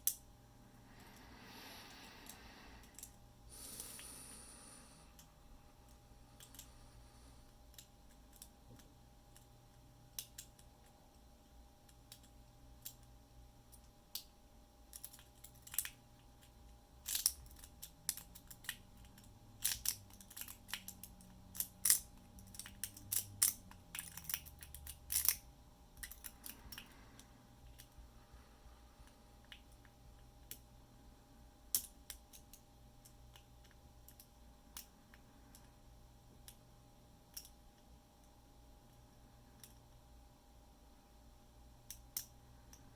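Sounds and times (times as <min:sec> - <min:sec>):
lock pick clicking and scraping: 0:17.0 - 0:25.4.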